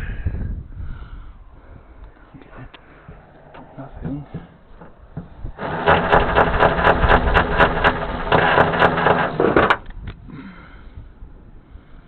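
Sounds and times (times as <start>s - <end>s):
regular clicking: 2.0s - 10.2s
power tool motor hum: 3.6s - 9.9s.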